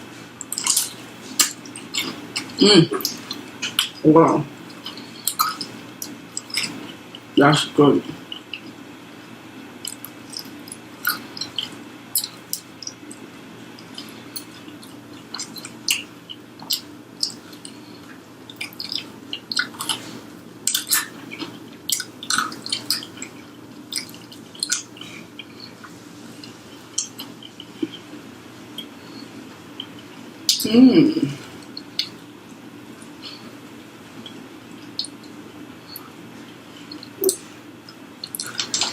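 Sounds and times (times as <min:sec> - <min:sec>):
chewing with crunches: 0:00.3 - 0:07.4, 0:08.2 - 0:30.7, 0:31.4 - 0:32.3, 0:32.9 - 0:38.9
wet mouth clicks: 0:00.4 - 0:04.0, 0:04.7 - 0:07.3, 0:09.8 - 0:13.2, 0:13.8 - 0:17.8, 0:18.5 - 0:25.9, 0:27.0 - 0:28.0, 0:29.8 - 0:30.7, 0:31.6 - 0:32.2, 0:34.2 - 0:35.3, 0:36.9 - 0:37.5, 0:38.2 - 0:38.9.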